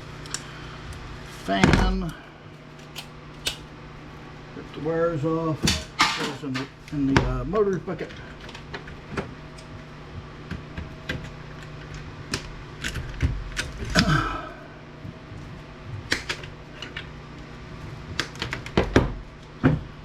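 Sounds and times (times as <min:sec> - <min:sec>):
steady low hum: 0:00.0 - 0:20.0
clicks of hand tools and parts: 0:02.8 - 0:03.6.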